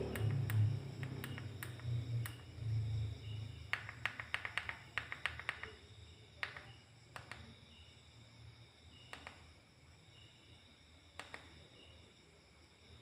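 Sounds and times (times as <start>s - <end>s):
clicks and taps of small objects: 0.0s - 2.5s, 3.7s - 5.8s, 6.4s - 7.5s, 9.1s - 9.5s, 11.2s - 11.6s
low hum: 0.0s - 3.7s.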